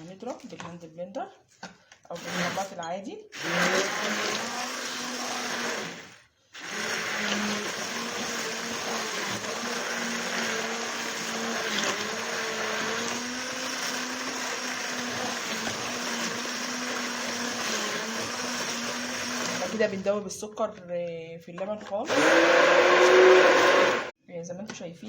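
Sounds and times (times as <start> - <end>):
electric hand blender running: 2.2 - 2.7, 3.4 - 19.9, 22.1 - 24.1.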